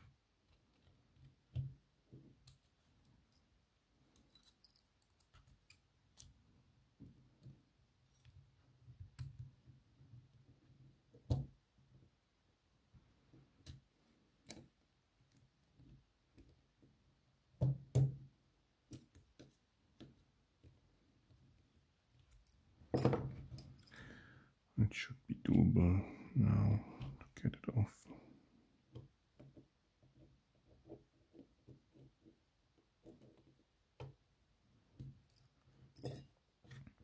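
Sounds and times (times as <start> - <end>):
metal tools clicking on a lock: 4.2 - 6.3.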